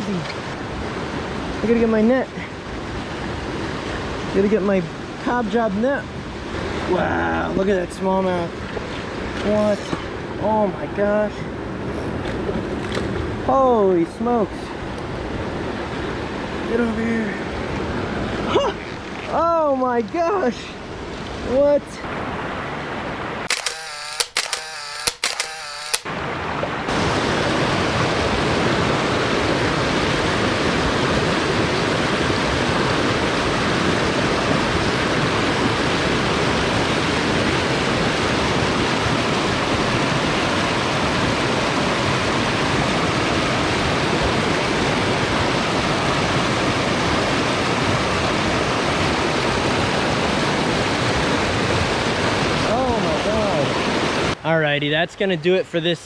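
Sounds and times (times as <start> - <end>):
sharp clicks: 23.5 - 26.1
fast-flowing creek rushing: 26.4 - 54.4.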